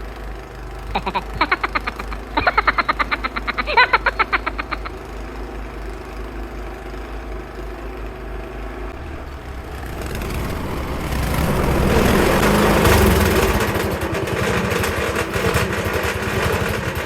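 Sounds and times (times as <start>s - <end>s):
snowblower engine running: 0.0s - 17.0s
rushing noise: 8.9s - 14.6s
fast rhythmic clatter: 9.0s - 17.0s.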